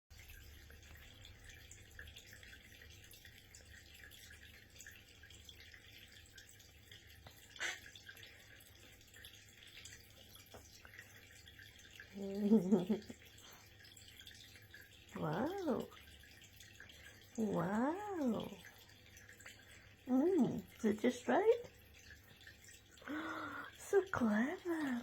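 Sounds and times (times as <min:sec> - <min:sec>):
water dripping from a tap: 0:00.1 - 0:25.0.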